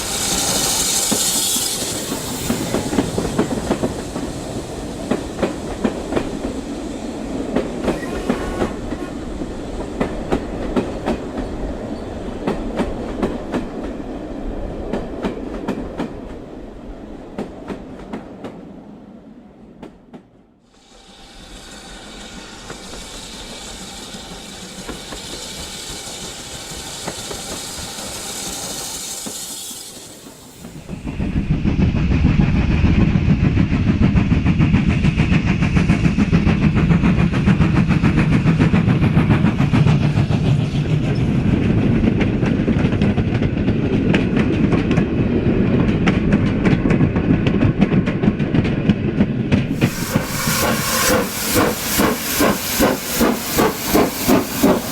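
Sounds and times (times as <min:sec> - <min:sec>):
steam hiss beats: 0:00.0 - 0:11.2, 0:20.7 - 0:32.0, 0:49.7 - 0:54.9
model train rumbling on track: 0:00.0 - 0:18.6, 0:19.8 - 0:54.9.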